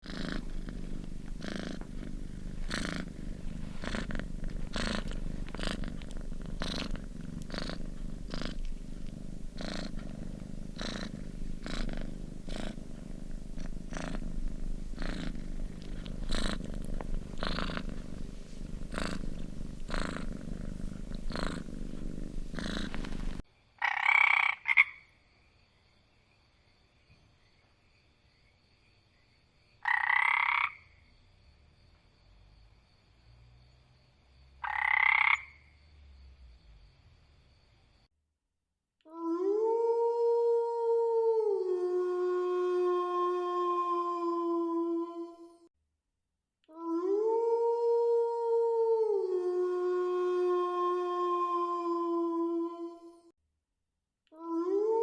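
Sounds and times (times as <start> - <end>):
cat purring: 0.0 - 23.4
croak-like animal call: 23.8 - 25.2, 29.8 - 31.0, 34.6 - 35.8.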